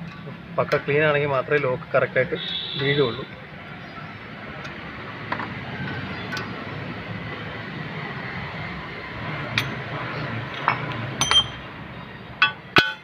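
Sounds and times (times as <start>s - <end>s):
steady background noise: 0.0s - 13.0s
light metal clicks and clinks: 10.5s - 11.6s.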